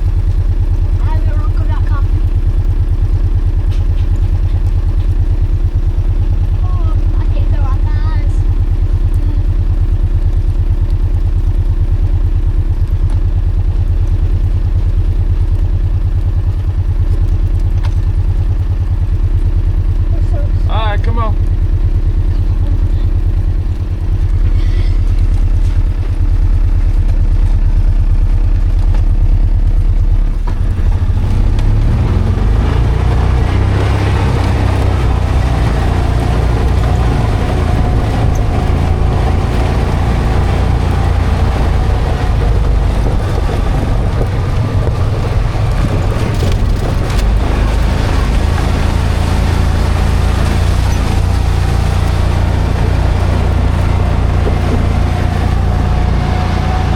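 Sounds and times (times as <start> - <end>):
engine running: 0.0 - 56.9.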